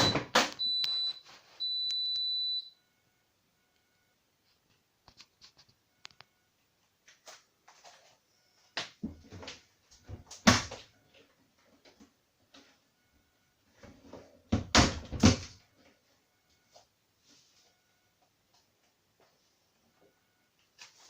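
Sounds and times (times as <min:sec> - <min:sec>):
door knocks and clunks: 0:14.5 - 0:15.6.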